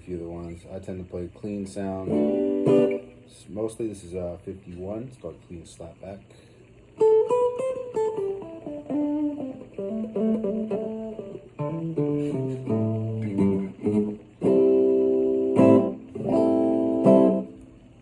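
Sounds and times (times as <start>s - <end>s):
clean electric guitar with echo: 2.0s - 3.4s, 7.0s - 17.9s.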